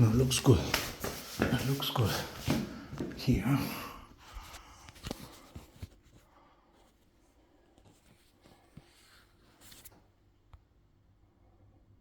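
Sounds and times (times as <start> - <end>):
soft rustle: 4.2 - 10.3.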